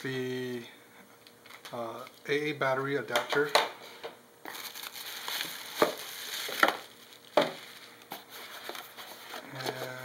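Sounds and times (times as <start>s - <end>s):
plastic packaging crinkling: 4.4s - 10.0s.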